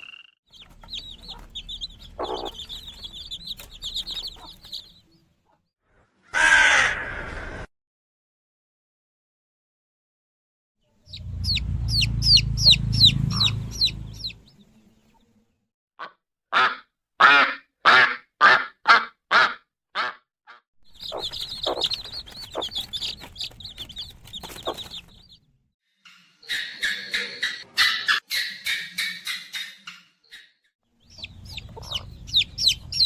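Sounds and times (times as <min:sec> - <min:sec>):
high chirps: 0:00.0 - 0:05.0, 0:20.9 - 0:25.4
poultry calling: 0:00.5 - 0:05.0, 0:21.0 - 0:25.4, 0:31.1 - 0:33.0
low rumble: 0:11.0 - 0:14.8
chatter of high peeps: 0:21.0 - 0:25.1.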